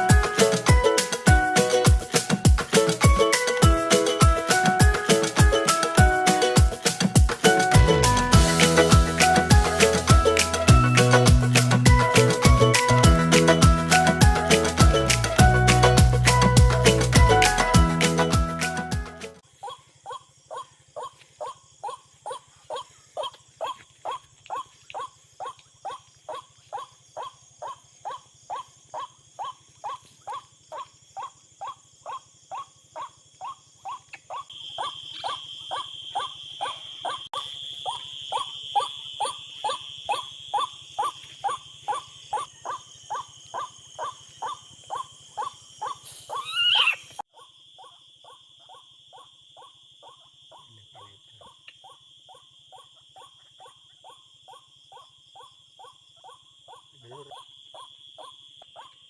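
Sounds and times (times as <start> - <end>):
insects trilling: 0.0 - 18.4, 19.4 - 59.0
loud rising bird call: 46.3 - 47.2.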